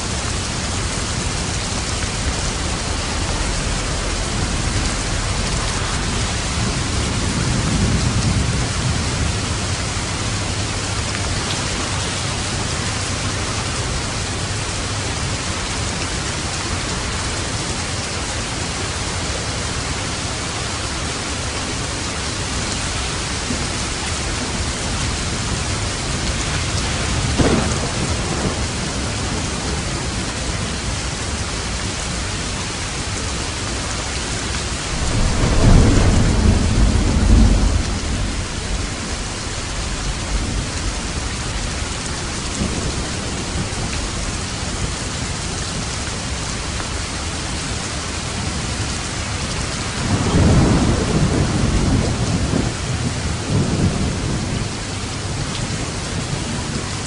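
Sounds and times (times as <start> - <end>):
heavy rain hissing: 0.0 - 57.0
low rumble of thunder: 0.0 - 57.0
thunder crack: 1.2 - 9.4, 26.1 - 29.9, 34.8 - 41.3.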